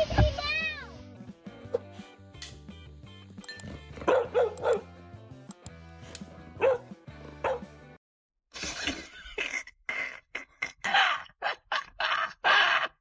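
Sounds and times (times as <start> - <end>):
background music: 0.0 - 8.0
dog barking: 4.0 - 4.9, 6.6 - 7.7.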